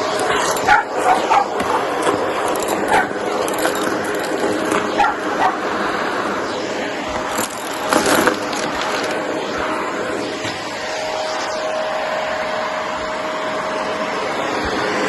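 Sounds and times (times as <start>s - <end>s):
vacuum cleaner running: 0.0s - 15.0s
dog yipping: 0.6s - 2.0s, 2.9s - 3.2s, 5.0s - 5.6s.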